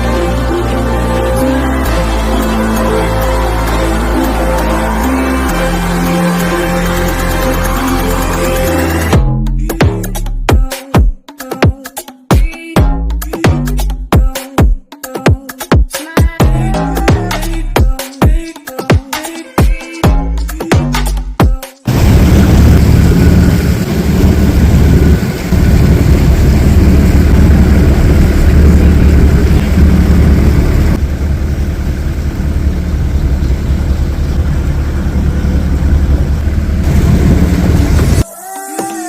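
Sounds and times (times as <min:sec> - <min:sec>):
boat engine humming: 0:00.0 - 0:09.3, 0:21.9 - 0:38.2.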